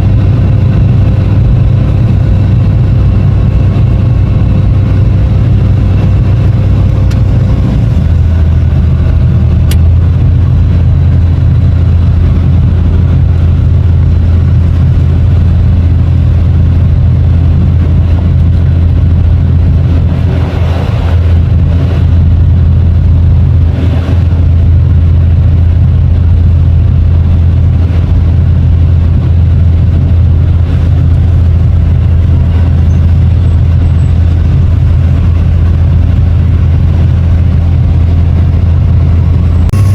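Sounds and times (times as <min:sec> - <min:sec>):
excavator diesel engine drone: 0:00.0 - 0:39.9
brief rushing swells: 0:39.4 - 0:39.9.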